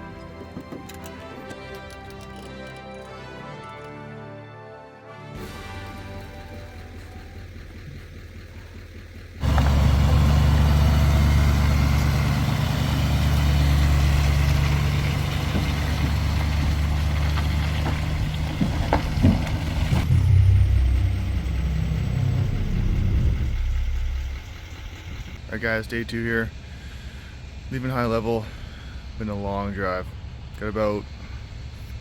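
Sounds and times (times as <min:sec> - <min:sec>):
knocks and rattles: 0:00.0 - 0:03.2, 0:12.4 - 0:25.4
truck engine droning: 0:05.4 - 0:32.0.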